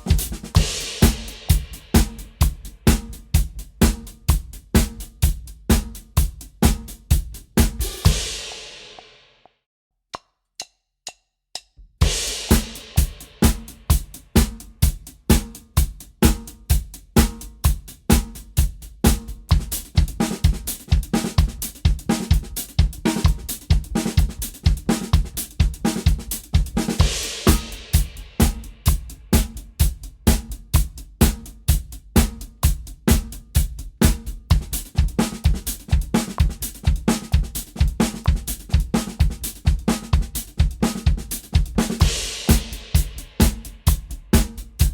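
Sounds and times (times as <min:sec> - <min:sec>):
drum kit groove: 0:00.0 - 0:09.4, 0:11.6 - 0:44.9.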